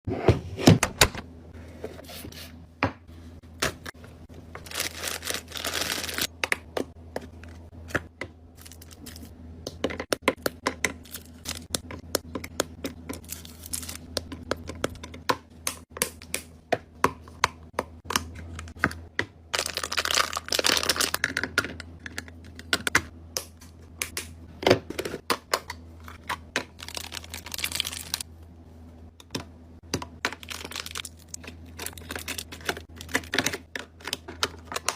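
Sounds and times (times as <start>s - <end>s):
items clicking and tapping: 2.8s - 19.9s, 20.6s - 28.2s, 29.2s - 34.9s
plastic packaging crinkling: 4.6s - 6.3s, 19.6s - 21.2s, 26.7s - 28.2s, 30.4s - 34.9s.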